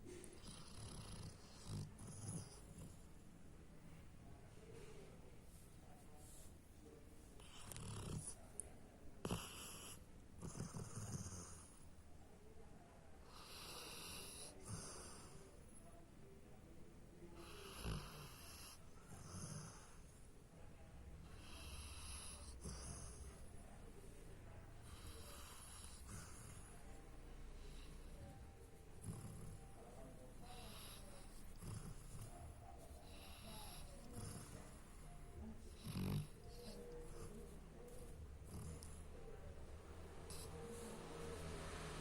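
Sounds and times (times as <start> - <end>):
dog snoring: 0.3 - 3.0, 7.4 - 8.4, 9.2 - 11.8, 13.2 - 15.5, 17.4 - 20.3, 21.2 - 23.7, 24.8 - 39.3, 40.2 - 42.0.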